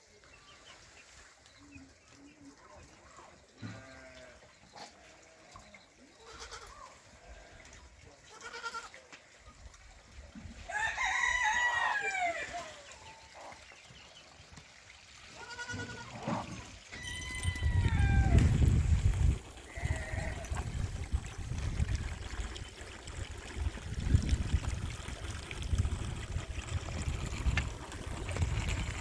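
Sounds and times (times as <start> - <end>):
rooster crowing: 10.7 - 12.6, 17.0 - 18.6
farm animal calls: 15.3 - 18.6, 19.6 - 20.6.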